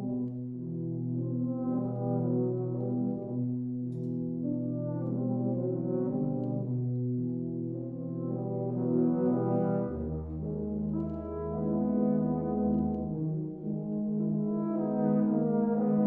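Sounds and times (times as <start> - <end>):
brass quartet playing chords: 4.4 - 16.0.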